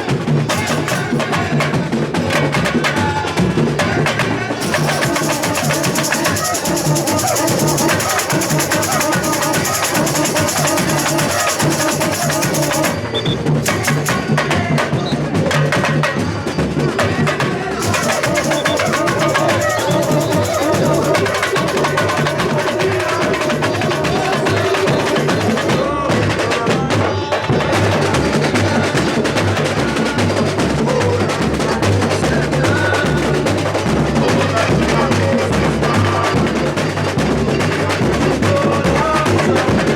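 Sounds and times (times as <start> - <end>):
snare drums and hand percussion: 0.0 - 39.9
shaker-like high hiss: 4.6 - 13.0.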